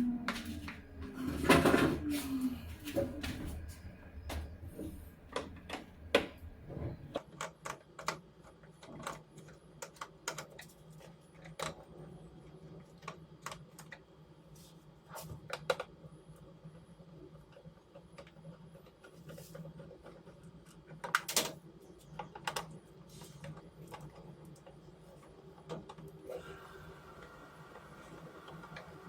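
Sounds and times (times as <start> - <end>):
low steady hum: 0.0 - 7.2.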